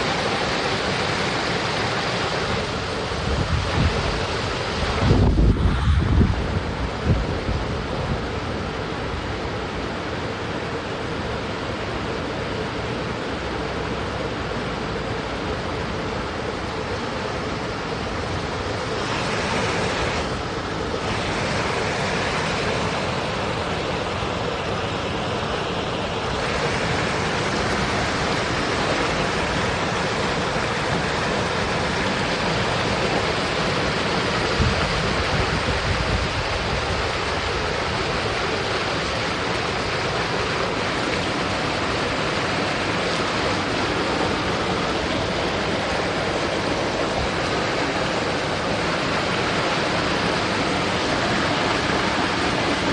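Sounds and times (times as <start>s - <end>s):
stream water rushing: 4.2s - 20.3s.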